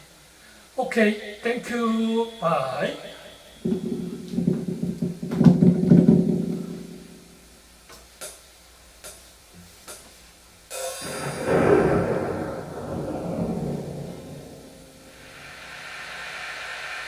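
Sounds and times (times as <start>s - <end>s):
cymbal crash: 10.7s - 17.0s.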